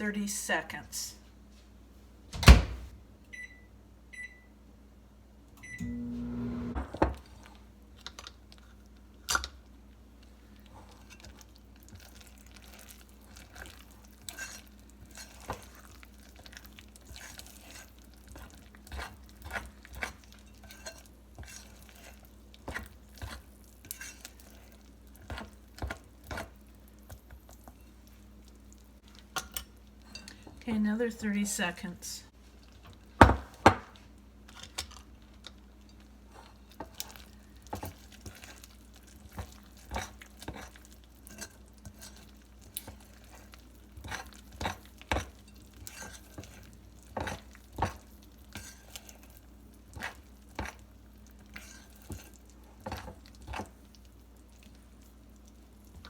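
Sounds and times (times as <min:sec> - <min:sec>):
microwave humming: 0:02.3 - 0:04.6, 0:05.4 - 0:07.2
microwave starting thunk: 0:02.4 - 0:02.9, 0:05.6 - 0:07.1
microwave keypad beeping: 0:02.5 - 0:04.5, 0:05.6 - 0:06.7.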